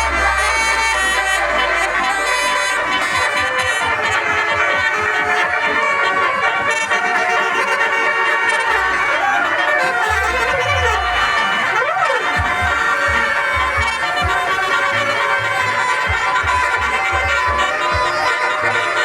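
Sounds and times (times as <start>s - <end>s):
deep irregular thumps: 0.0s - 4.3s, 10.1s - 19.0s
bus horns playing a tune: 0.0s - 19.0s.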